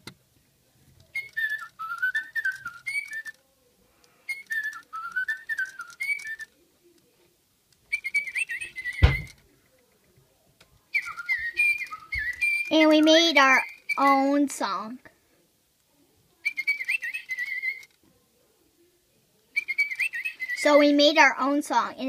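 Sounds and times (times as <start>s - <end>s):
toy bird electronic chirping: 1.1s - 3.4s, 4.3s - 6.5s, 7.9s - 9.4s, 11.0s - 14.2s, 16.5s - 18.0s, 19.6s - 20.9s.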